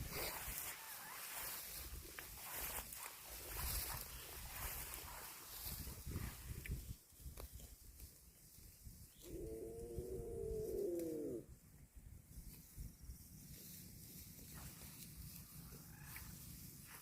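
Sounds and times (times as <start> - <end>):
cow mooing: 9.4 - 11.4.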